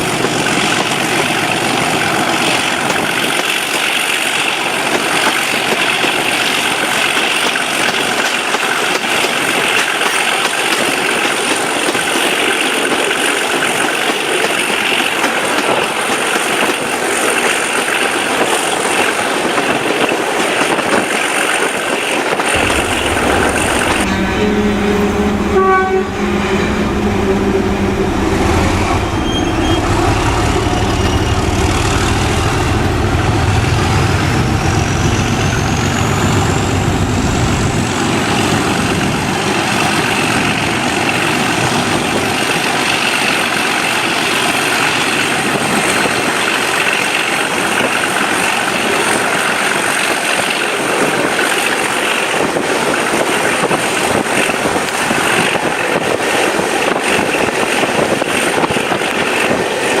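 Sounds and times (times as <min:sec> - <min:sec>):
locomotive diesel engine rumble: 0:22.5 - 0:37.9.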